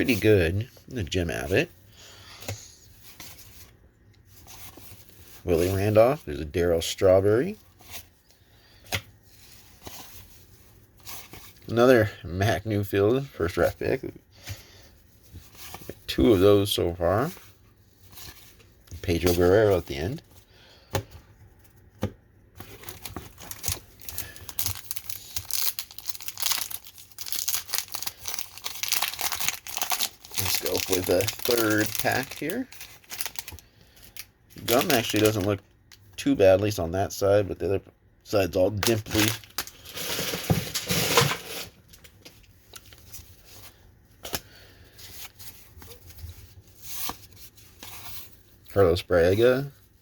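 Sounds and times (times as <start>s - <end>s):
wax paper wrapper crinkling: 22.6s - 36.1s, 38.8s - 48.7s
cards rustling: 22.6s - 36.4s, 38.7s - 49.8s.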